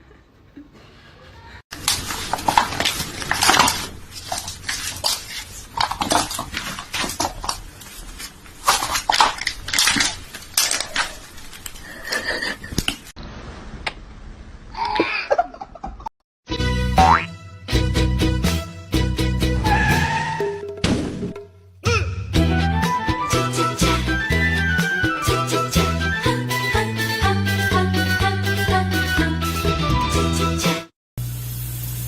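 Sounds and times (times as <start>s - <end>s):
hard objects clattering: 1.8s - 8.0s.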